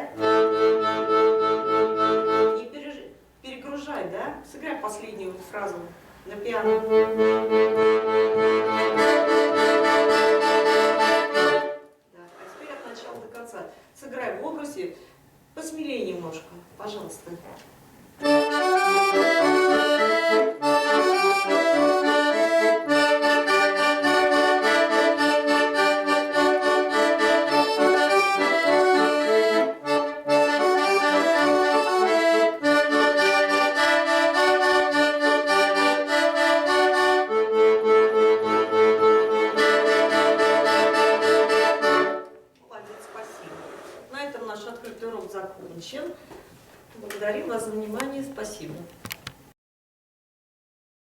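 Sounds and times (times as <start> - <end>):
accordion playing lively piece: 0.0 - 2.8, 6.3 - 13.2, 18.2 - 44.6.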